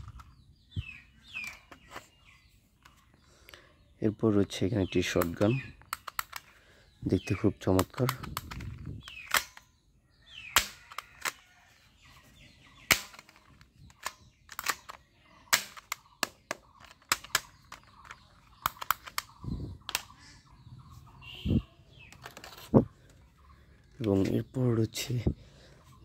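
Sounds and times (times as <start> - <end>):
toy shotgun snapping clicks: 5.2 - 6.5, 7.8 - 9.7, 10.5 - 11.4, 12.9 - 19.3.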